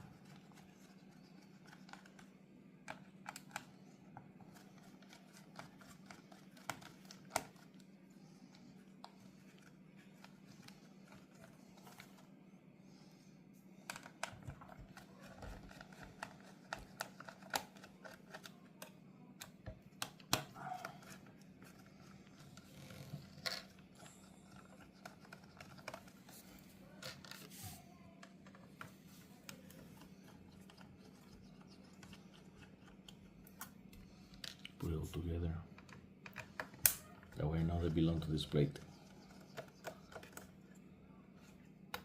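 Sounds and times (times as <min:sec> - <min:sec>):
plastic parts clicking and scratching: 0:00.0 - 0:07.8, 0:13.8 - 0:40.8
faint steady hum: 0:00.0 - 0:42.0.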